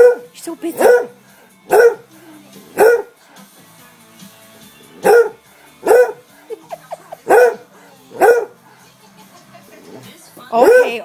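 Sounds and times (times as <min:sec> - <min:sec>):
dog yelping: 0:00.0 - 0:01.1, 0:01.7 - 0:02.0, 0:02.8 - 0:03.1, 0:05.0 - 0:06.2, 0:07.3 - 0:07.6, 0:08.2 - 0:08.6, 0:10.6 - 0:11.0
dog barking: 0:00.0 - 0:02.1, 0:02.7 - 0:03.2, 0:05.0 - 0:06.3, 0:07.2 - 0:08.6, 0:10.5 - 0:11.0.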